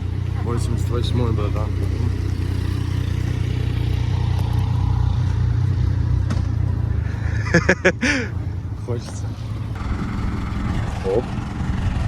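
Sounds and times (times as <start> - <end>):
car engine idling: 0.0 - 11.6.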